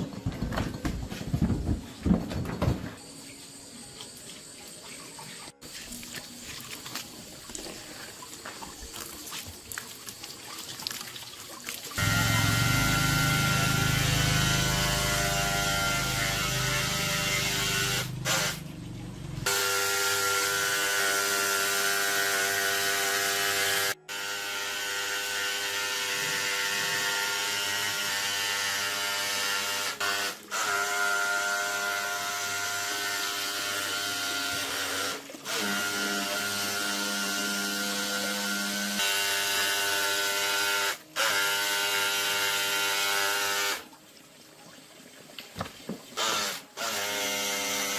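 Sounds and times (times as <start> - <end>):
electric power tool motor running: 12.0 - 18.6, 19.4 - 43.8, 46.2 - 47.9.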